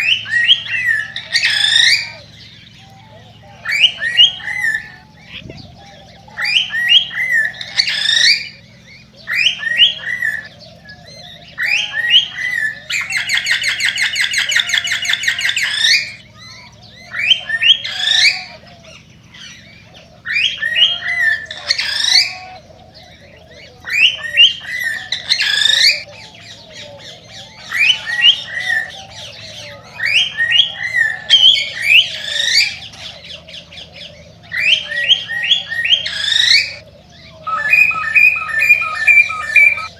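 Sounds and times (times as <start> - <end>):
buzzy bird trill: 37.4 - 39.9
cockatiel whistling song: 37.5 - 39.9.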